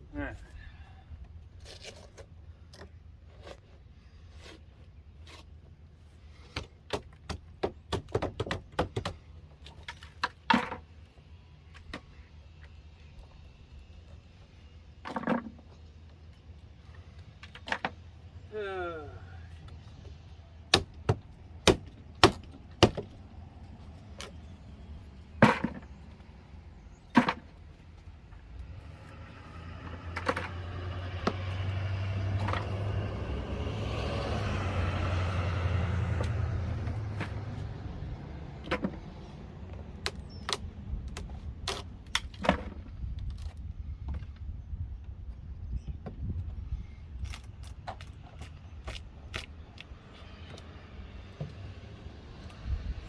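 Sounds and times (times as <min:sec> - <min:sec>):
knocks and bangs on wooden wall: 0:06.9 - 0:09.2
road vehicle passing: 0:28.2 - 0:40.1, 0:49.6 - 0:53.0.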